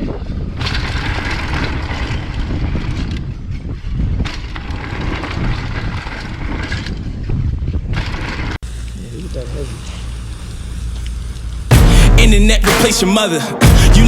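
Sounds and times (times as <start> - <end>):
bike bumps: 0.0 - 8.9
wind buffeting microphone: 0.0 - 10.9
bike tyre and frame rattle: 0.0 - 11.7.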